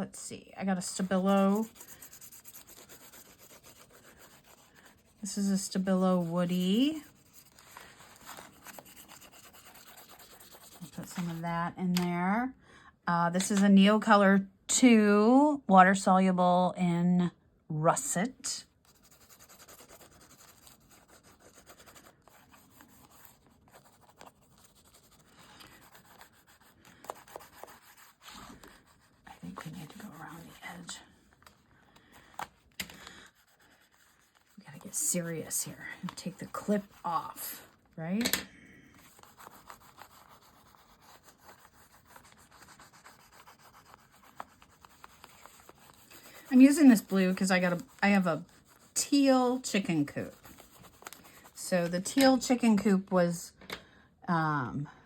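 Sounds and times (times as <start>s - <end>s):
crayon rubbing on paper: 0.8s - 11.4s, 18.8s - 31.1s, 33.3s - 37.8s, 39.0s - 51.7s.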